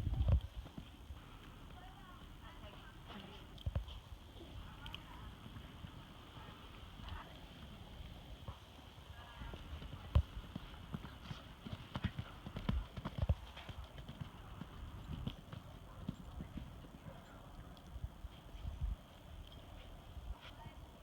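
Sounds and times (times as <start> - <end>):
horse hooves striking ground: 0.0 - 21.0.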